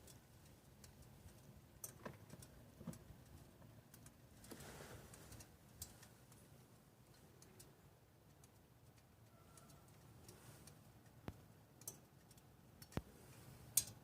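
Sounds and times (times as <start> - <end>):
faint hiss: 4.4 - 6.7.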